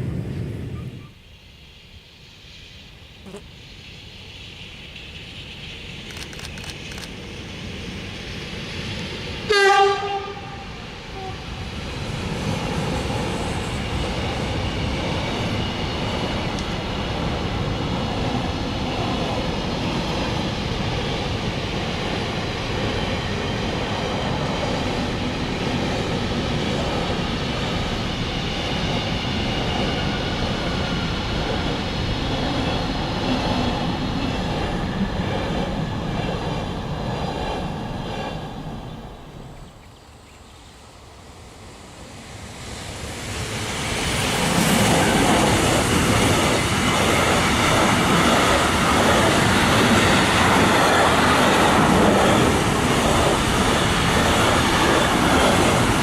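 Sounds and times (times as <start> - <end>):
train horn blast: 9.5 - 11.5.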